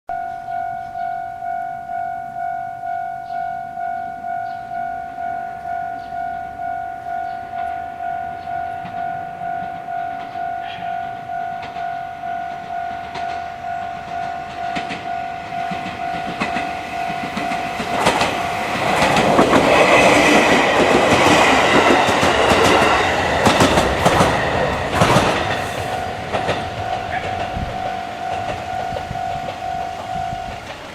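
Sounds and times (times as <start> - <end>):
electric train passing: 0.1 - 30.9
level crossing warning bell: 0.1 - 30.9
train wheels clacking on rail joints: 8.4 - 30.9.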